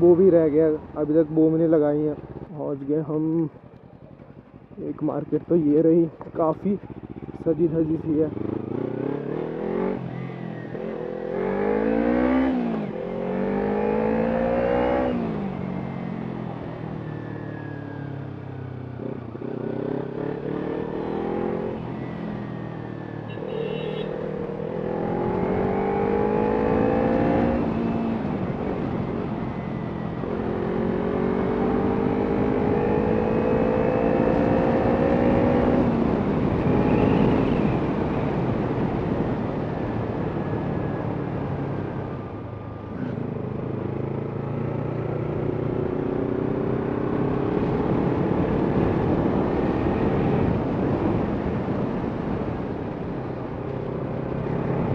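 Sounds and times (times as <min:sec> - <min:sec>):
motorcycle engine revving: 0:06.8 - 0:07.6, 0:08.2 - 0:15.7, 0:18.8 - 0:38.2, 0:42.9 - 0:51.5.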